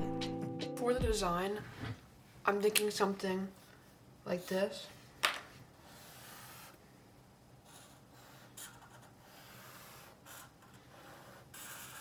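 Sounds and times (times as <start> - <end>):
pencil strokes on paper: 5.8 - 6.8, 7.6 - 12.0.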